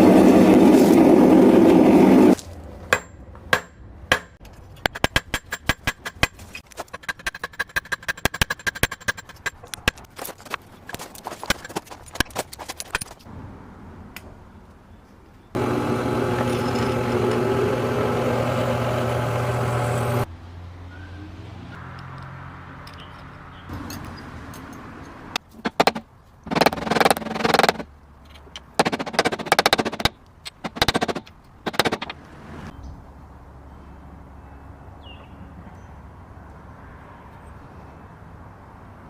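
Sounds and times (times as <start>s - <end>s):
hammer striking metal on anvil: 2.9s - 6.4s.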